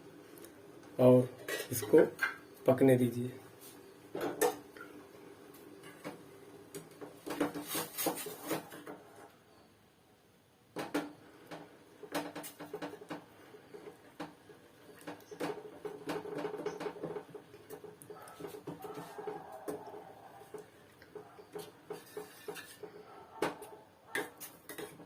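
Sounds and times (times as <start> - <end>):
metal spoon stirring in a pan: 16.5 - 23.0, 24.1 - 25.0.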